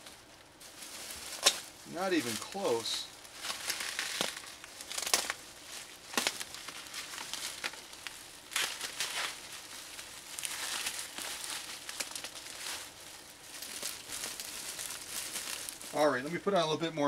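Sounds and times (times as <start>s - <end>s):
packing material crinkling: 0.0s - 16.5s.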